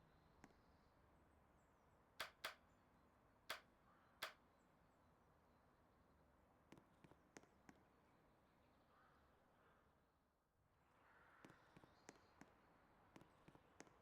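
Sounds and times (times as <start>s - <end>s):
faint ticks: 2.2s - 2.6s, 3.5s - 4.4s
sharp clicks: 2.2s - 2.6s.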